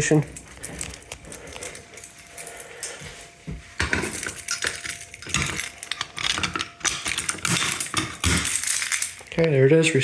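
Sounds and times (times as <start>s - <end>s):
keys jangling: 0.0s - 3.1s, 3.8s - 9.5s
metallic clicks and rattles: 3.9s - 9.6s.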